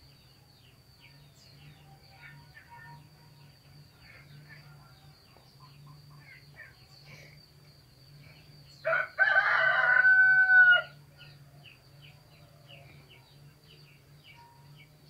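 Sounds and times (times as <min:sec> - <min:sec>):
small birds chirping: 0:00.0 - 0:15.0
rooster crowing: 0:08.8 - 0:11.4.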